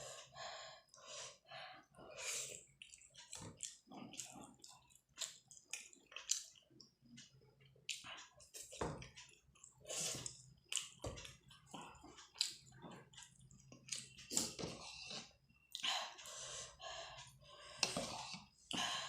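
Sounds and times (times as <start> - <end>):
wet chewing and smacking: 2.5 - 15.9.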